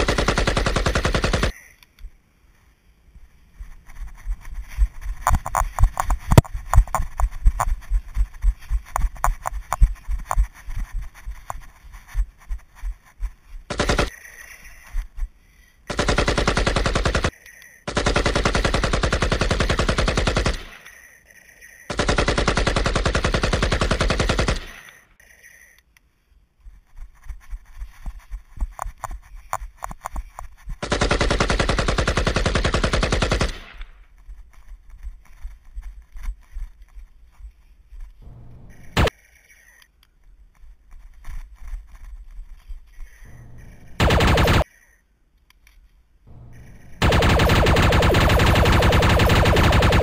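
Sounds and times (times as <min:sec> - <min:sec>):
automatic gunfire bursts: 0:00.0 - 0:01.5, 0:13.7 - 0:14.1, 0:15.9 - 0:20.8, 0:21.9 - 0:24.8, 0:30.8 - 0:33.8, 0:43.4 - 0:44.6, 0:46.4 - 0:50.0.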